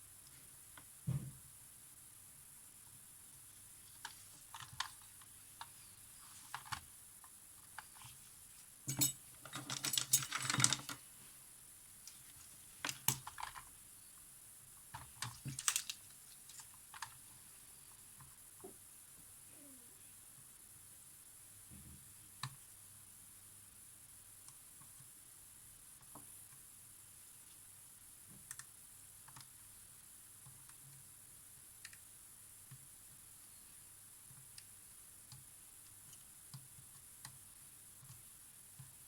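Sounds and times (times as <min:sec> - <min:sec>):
small tools clicking and tapping: 0:08.9 - 0:11.0, 0:14.9 - 0:17.2.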